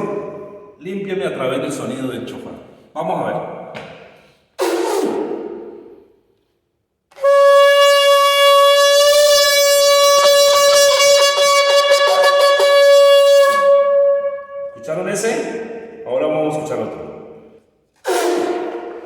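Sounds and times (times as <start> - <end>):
shofar long steady note: 7.2 - 14.9, 18.0 - 19.0.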